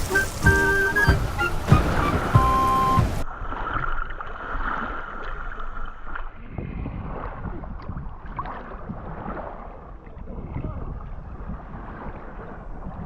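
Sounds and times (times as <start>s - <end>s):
music: 0.0s - 3.2s
wind and water rushing: 0.0s - 13.0s.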